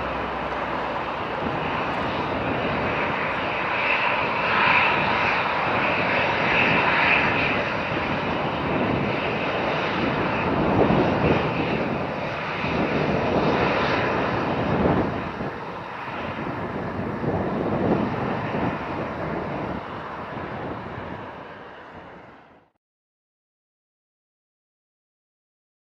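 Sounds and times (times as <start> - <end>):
jet engines rumbling with whine: 0.0 - 22.8.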